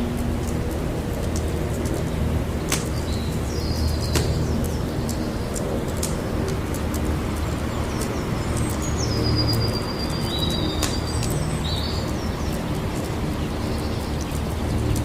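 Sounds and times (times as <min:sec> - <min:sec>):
campfire crackling and popping: 0:00.0 - 0:15.0.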